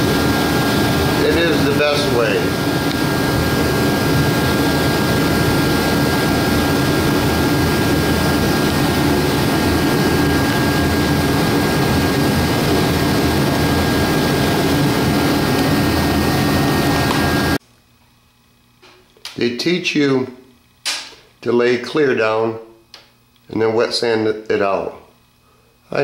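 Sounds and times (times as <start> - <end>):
machine running with rushing noise: 0.0 - 17.6
thin steady whine: 0.0 - 26.0.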